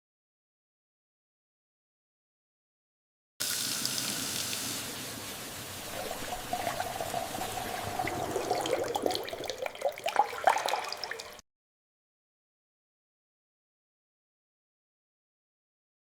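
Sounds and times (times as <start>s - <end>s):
liquid pouring and trickling: 3.4s - 4.8s, 5.8s - 11.4s.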